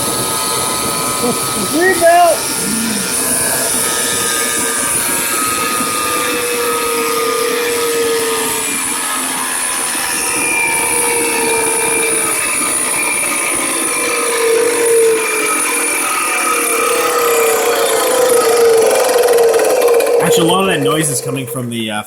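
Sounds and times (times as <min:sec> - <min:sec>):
starter motor whining: 0:00.0 - 0:22.0.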